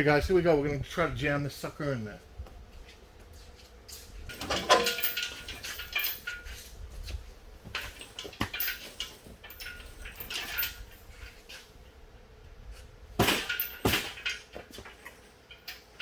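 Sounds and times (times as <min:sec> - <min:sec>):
metal clinks and scrapes: 0:03.9 - 0:11.8, 0:13.2 - 0:16.0.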